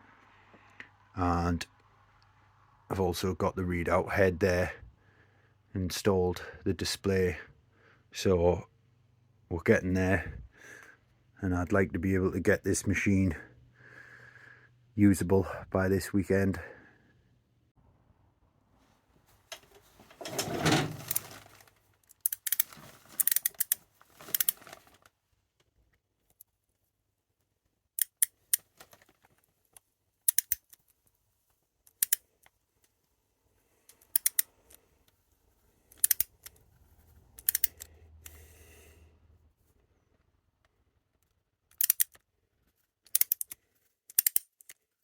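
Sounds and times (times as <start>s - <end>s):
scraping rustle: 19.2s - 21.9s, 22.6s - 25.1s
metal parts clicking and clinking: 19.5s - 24.8s, 30.3s - 31.0s, 31.9s - 32.2s, 33.9s - 34.8s, 35.9s - 36.6s, 37.4s - 37.9s, 41.7s - 42.2s, 43.1s - 44.8s.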